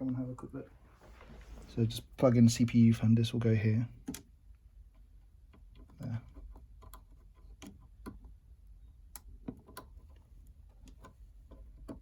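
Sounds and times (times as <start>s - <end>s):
small plastic clicks and taps: 4.0s - 4.3s, 4.9s - 8.4s, 9.1s - 12.0s.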